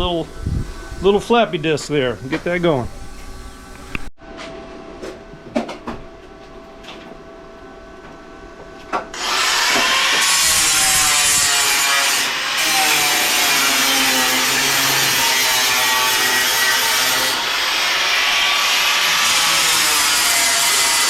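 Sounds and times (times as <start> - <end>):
angle grinder grinding: 9.2 - 21.0.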